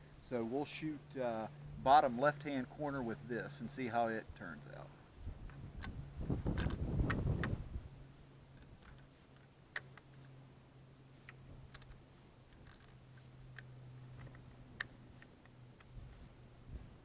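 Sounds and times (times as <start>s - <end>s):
steady low hum: 0.0s - 17.0s
rifle handling rumble: 5.1s - 7.7s, 8.5s - 10.4s, 11.2s - 17.0s.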